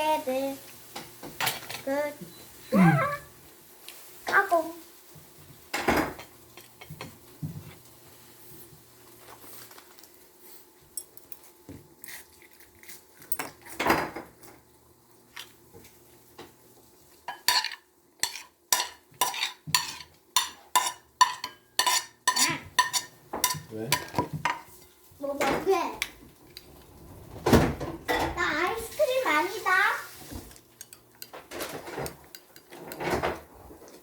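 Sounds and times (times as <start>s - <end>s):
cutlery clinking against dishes: 17.3s - 24.7s, 30.8s - 33.2s.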